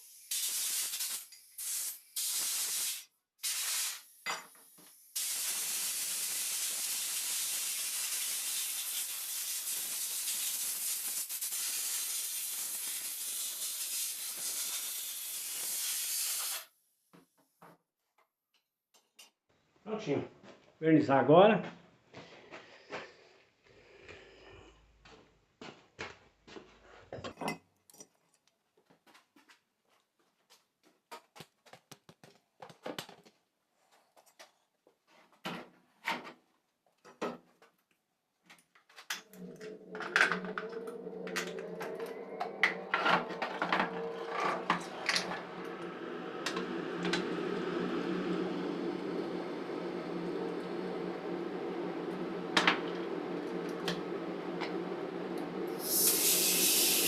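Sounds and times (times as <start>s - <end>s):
steady machine hum: 39.2s - 57.0s.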